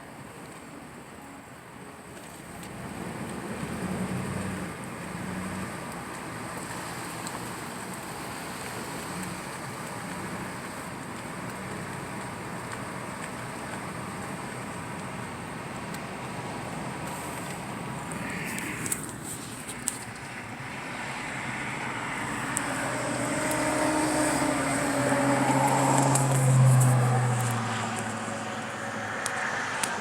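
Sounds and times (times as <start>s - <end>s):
car engine and road noise: 0.0s - 30.0s.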